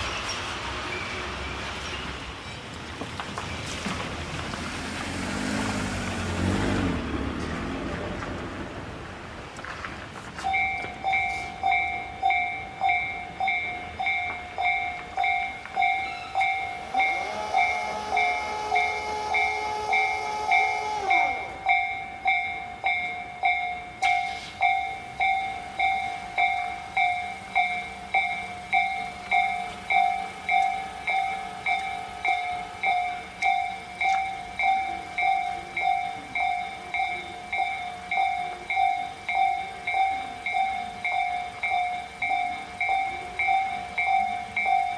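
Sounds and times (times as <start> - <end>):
level crossing alarm ringing: 10.4 - 44.9
train horn chord: 16.1 - 21.7.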